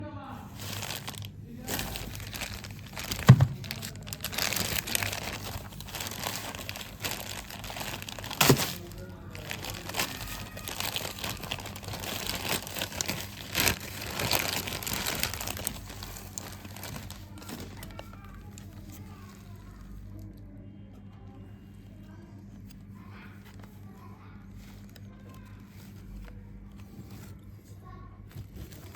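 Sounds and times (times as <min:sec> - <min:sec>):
packaging crinkling: 0:00.4 - 0:20.0, 0:28.3 - 0:28.9.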